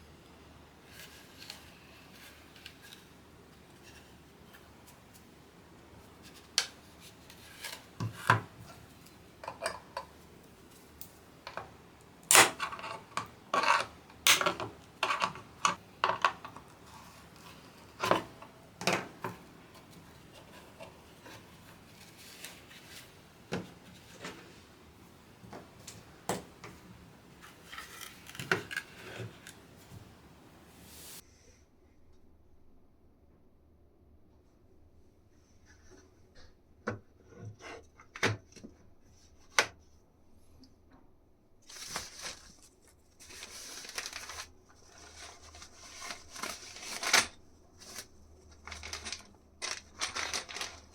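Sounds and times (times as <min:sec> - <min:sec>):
small hard parts clicking and tapping: 0:11.0 - 0:21.4.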